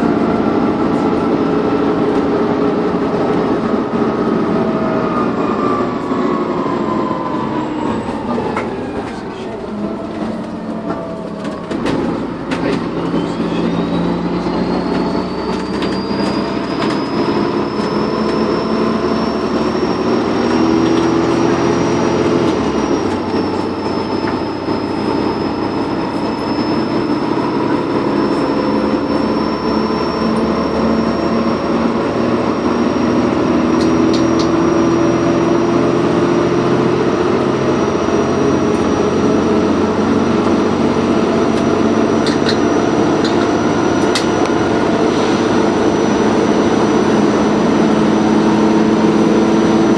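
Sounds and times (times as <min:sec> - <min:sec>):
bus engine running: 0:00.0 - 0:49.9
turbocharger whistle: 0:12.9 - 0:49.9.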